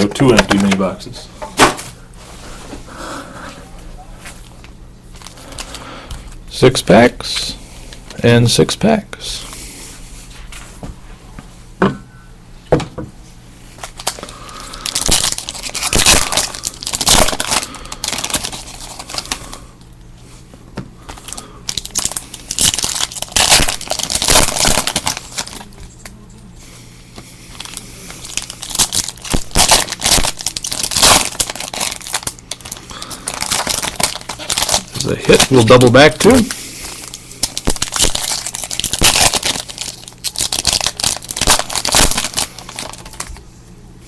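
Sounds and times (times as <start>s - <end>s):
wrapper tearing and crinkling: 5.1s - 5.8s, 13.8s - 19.6s, 21.1s - 25.8s, 27.5s - 43.4s.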